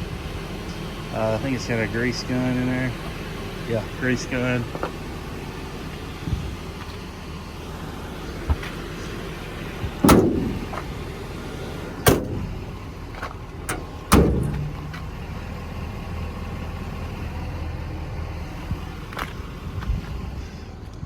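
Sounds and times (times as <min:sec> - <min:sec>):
low steady hum: 0:00.0 - 0:21.0
metal doors slamming shut: 0:09.9 - 0:11.0, 0:12.0 - 0:12.8, 0:13.6 - 0:15.1
latch clicks: 0:10.0 - 0:10.9, 0:12.0 - 0:12.6, 0:13.6 - 0:15.1.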